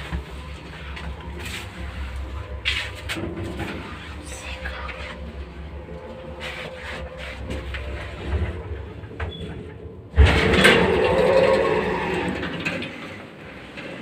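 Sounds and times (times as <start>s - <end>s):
lift low steady hum: 0.0s - 12.7s
lift doors banging and rattling: 7.5s - 14.0s.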